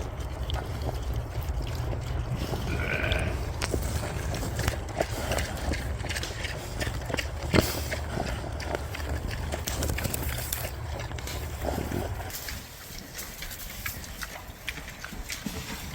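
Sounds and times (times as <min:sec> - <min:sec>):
steady low rumble: 0:00.0 - 0:15.1
sheep bleating: 0:02.6 - 0:03.4.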